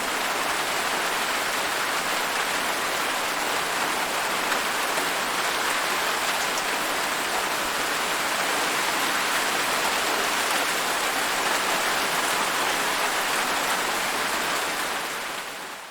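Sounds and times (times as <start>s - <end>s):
steady rain falling: 0.0s - 15.9s.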